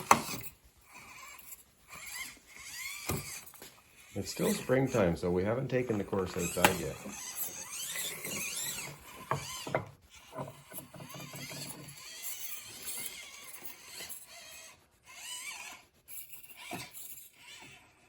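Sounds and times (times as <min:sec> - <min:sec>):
small motor and gears whining: 0:00.0 - 0:18.0.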